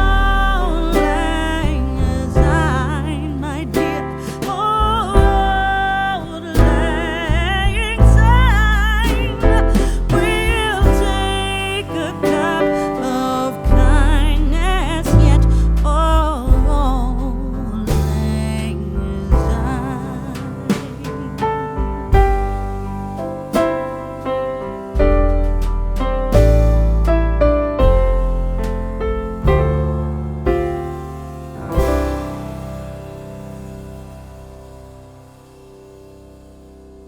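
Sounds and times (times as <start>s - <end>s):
person singing with vibrato: 0.0s - 22.7s
deep bass and instruments: 0.0s - 37.0s.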